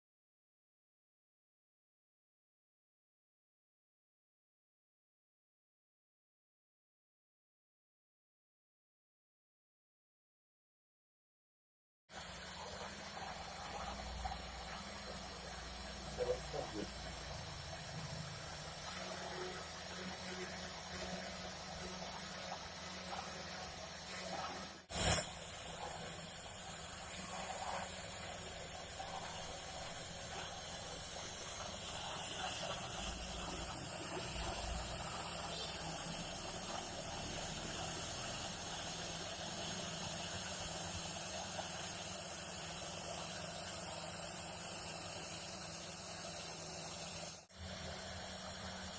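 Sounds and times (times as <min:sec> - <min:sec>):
router spindle hissing: 0:12.2 - 0:41.1.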